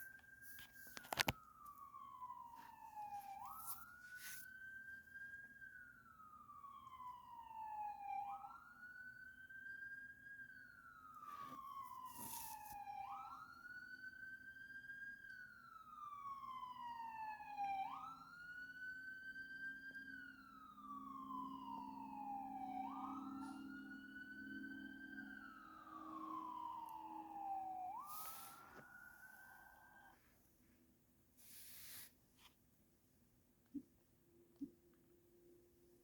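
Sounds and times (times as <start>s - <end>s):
emergency vehicle siren wailing: 0.0s - 30.3s
low steady hum: 17.5s - 31.2s
short hissing burst: 31.4s - 32.1s.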